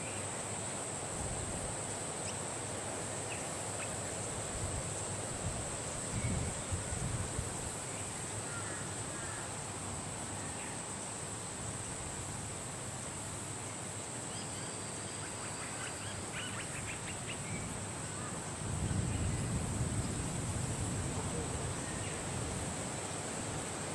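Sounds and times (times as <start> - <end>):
wind blowing in gusts: 1.1 - 1.9, 4.2 - 8.6, 16.8 - 23.9.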